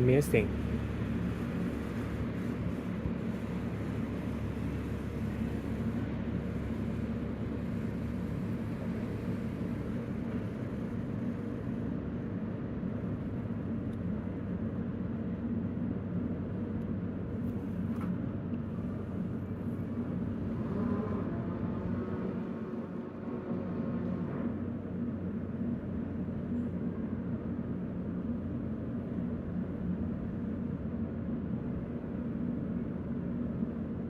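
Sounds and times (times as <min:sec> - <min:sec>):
low engine rumble: 0:00.0 - 0:34.0.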